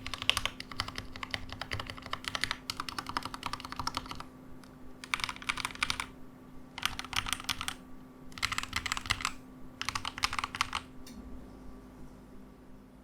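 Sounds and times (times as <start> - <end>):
mechanical keyboard typing: 0.0 - 4.3, 5.0 - 6.1, 6.8 - 10.9.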